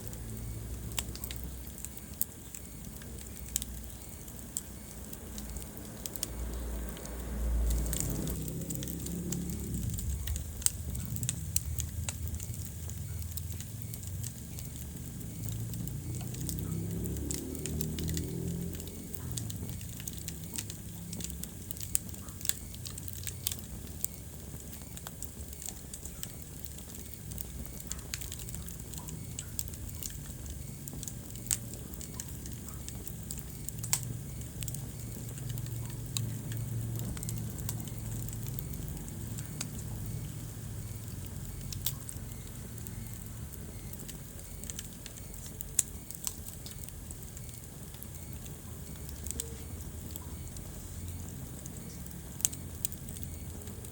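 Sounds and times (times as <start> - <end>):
wood fire crackling and popping: 0.0 - 53.9.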